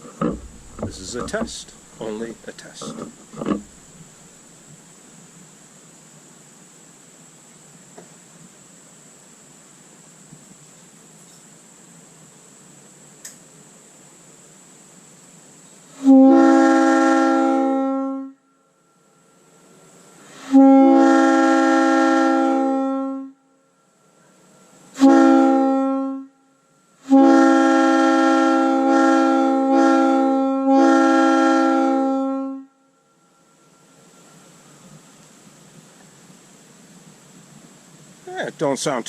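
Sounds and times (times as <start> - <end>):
faint air hiss: 0.0 - 17.6, 18.4 - 32.0, 32.8 - 39.0
locomotive air horn blasts: 0.2 - 4.0, 16.0 - 18.4, 20.3 - 23.5, 25.0 - 26.4, 27.0 - 33.1.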